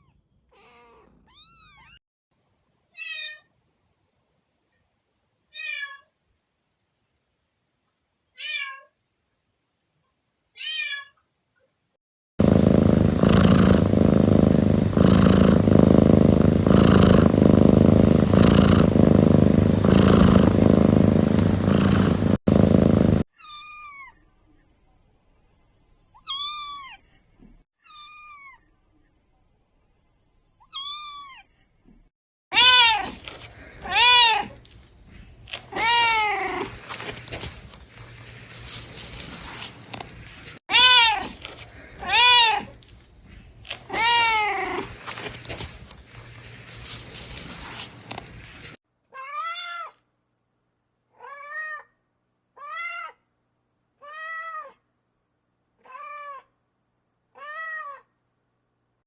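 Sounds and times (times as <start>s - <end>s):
kitten meowing: 0.6s - 2.0s, 30.7s - 31.4s
cat purring: 12.4s - 23.3s.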